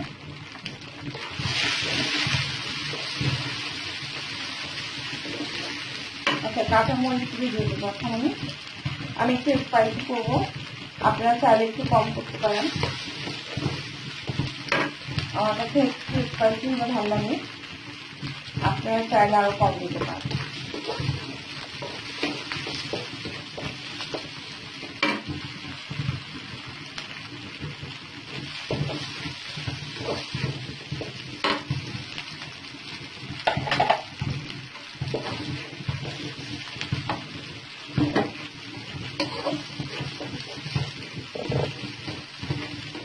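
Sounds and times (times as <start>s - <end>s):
vegetables sizzling in a pan: 0.0s - 43.0s
utensil scraping a pan: 19.9s - 26.0s, 28.3s - 32.1s, 33.2s - 43.0s.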